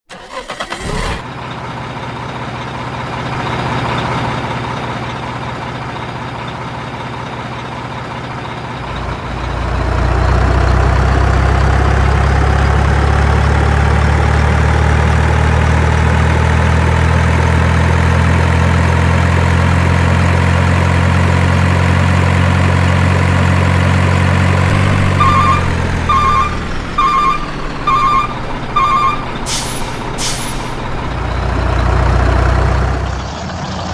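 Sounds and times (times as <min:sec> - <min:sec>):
heavy vehicle engine running: 0:00.1 - 0:33.9
reversing alarm beeps: 0:24.7 - 0:29.9
rising whine: 0:24.7 - 0:31.9.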